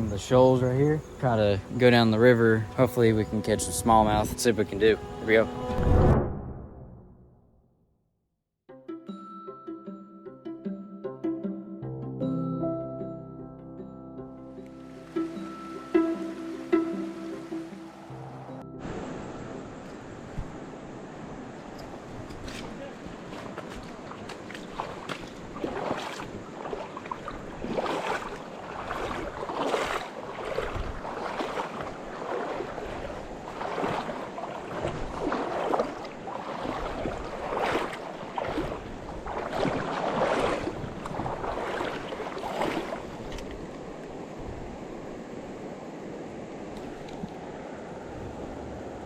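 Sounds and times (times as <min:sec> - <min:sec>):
steady rush of water: 0:14.8 - 0:49.0
water sloshing from wading: 0:21.6 - 0:44.2.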